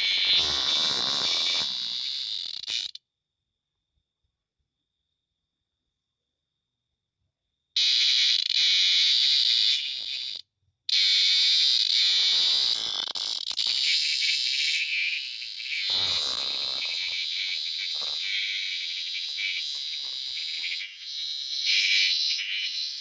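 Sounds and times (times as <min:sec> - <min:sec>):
buzzing animal call: 0:00.0 - 0:03.0, 0:07.8 - 0:23.0.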